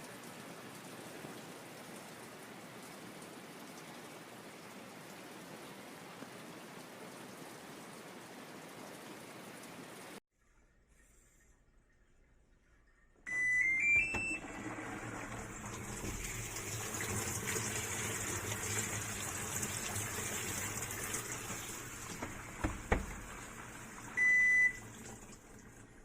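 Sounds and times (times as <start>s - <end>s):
washing machine beeps: 13.2s - 16.4s, 21.8s - 25.0s
water running into tub: 13.8s - 26.0s.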